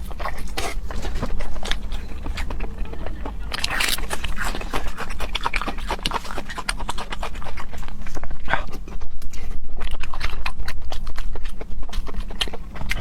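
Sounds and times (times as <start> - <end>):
low hum: 0.0 - 13.0
wet chewing and lip-smacking: 0.0 - 13.0.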